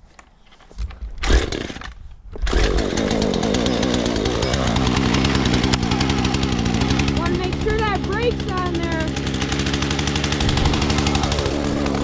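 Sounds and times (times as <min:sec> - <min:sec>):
starter cord pull: 0:01.2 - 0:03.3
chainsaw engine running: 0:01.3 - 0:12.0.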